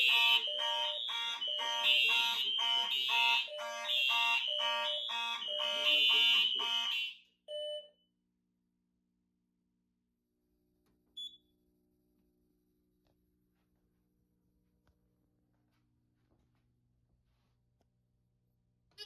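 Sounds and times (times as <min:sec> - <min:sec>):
fire alarm pulsed signal: 0:00.0 - 0:08.0.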